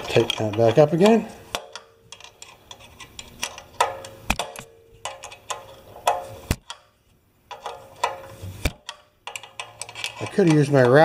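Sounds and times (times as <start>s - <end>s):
wrench clicking on metal nut: 8.8s - 11.0s.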